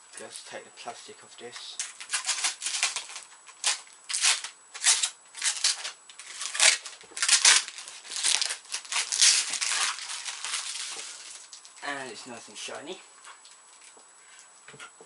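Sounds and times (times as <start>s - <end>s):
plastic film crinkling and rustling: 1.8s - 12.0s.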